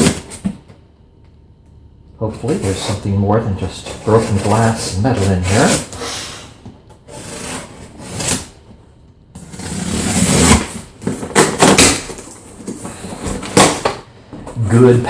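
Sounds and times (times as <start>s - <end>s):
cardboard box rustling and scraping: 3.8s - 6.0s, 7.1s - 8.5s, 9.4s - 13.6s.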